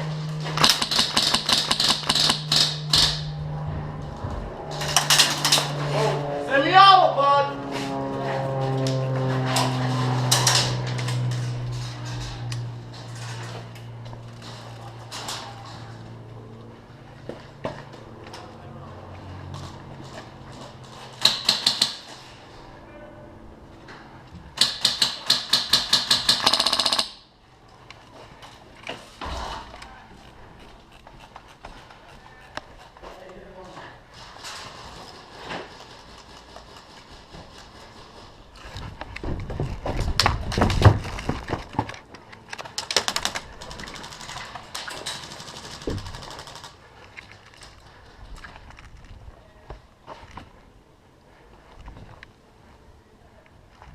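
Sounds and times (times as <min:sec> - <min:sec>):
airsoft gun firing: 0:00.6 - 0:03.3, 0:24.6 - 0:27.2.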